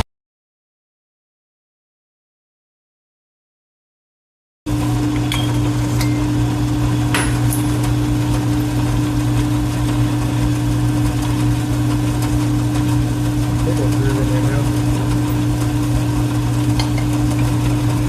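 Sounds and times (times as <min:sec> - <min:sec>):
metal lathe motor hum: 0:04.7 - 0:18.0.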